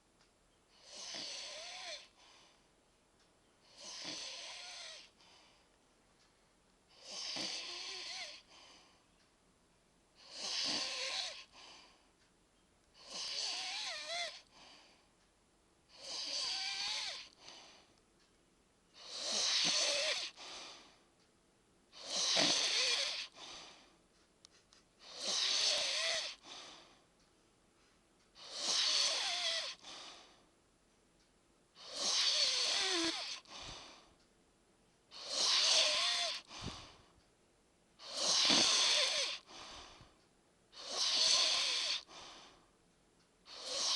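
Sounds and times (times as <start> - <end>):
man snoring: 0.8 - 2.1, 3.7 - 5.1, 6.9 - 8.5, 10.2 - 11.5, 13.0 - 14.4, 15.9 - 17.4, 19.0 - 20.4, 22.0 - 23.4, 25.0 - 26.4, 28.4 - 29.8, 31.8 - 33.5, 35.2 - 36.5, 38.0 - 39.5, 40.8 - 42.1, 43.5 - 43.9.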